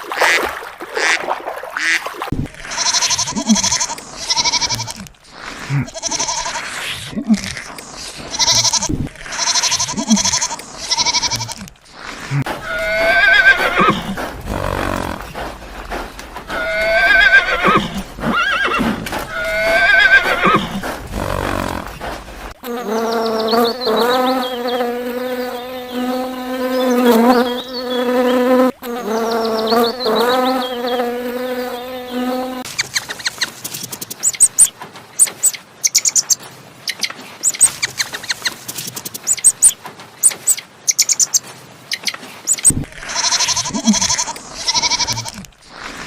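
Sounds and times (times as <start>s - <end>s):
animal calls: 2.6s - 22.2s.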